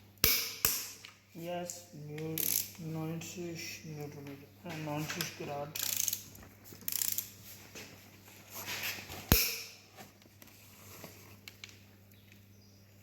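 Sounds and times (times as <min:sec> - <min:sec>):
ratchet wrench clicking: 0:02.4 - 0:02.8, 0:05.8 - 0:06.3, 0:06.9 - 0:07.4.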